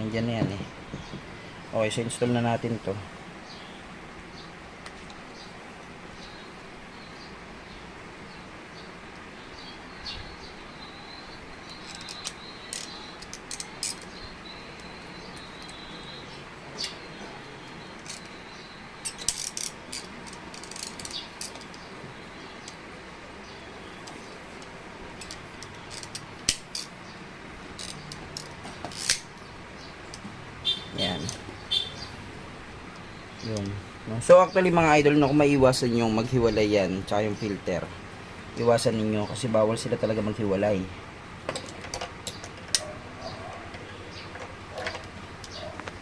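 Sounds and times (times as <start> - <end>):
steady background hiss: 0.0 - 46.0
high chirping tone: 9.9 - 19.3, 30.6 - 32.4
clicks of parts being fitted: 24.0 - 27.0, 27.8 - 29.5, 41.5 - 42.9.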